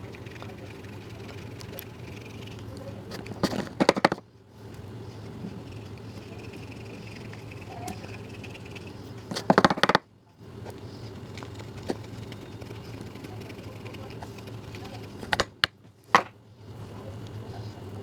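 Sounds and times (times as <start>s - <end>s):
rapid sharp clicking: 0.0s - 4.2s, 11.4s - 15.7s.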